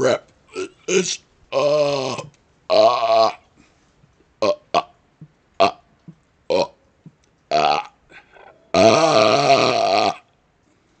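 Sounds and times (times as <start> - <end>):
man burping: 0.5 - 3.5, 4.4 - 5.0, 6.5 - 6.8, 7.5 - 10.3.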